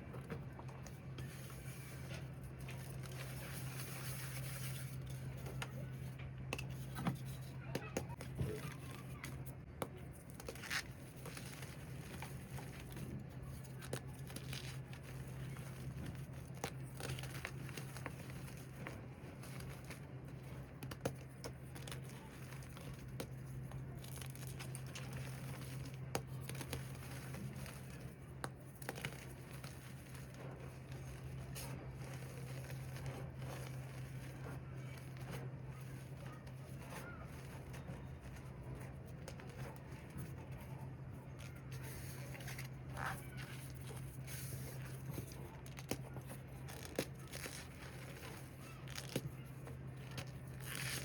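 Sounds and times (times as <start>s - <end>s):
steady low hum: 0.0s - 51.0s
packed starch squeaking: 0.6s - 51.0s.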